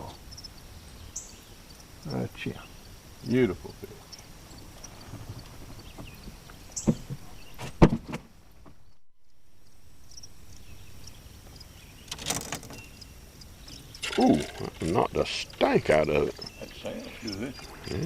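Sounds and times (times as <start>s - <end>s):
sharp knocks: 6.8s - 8.8s.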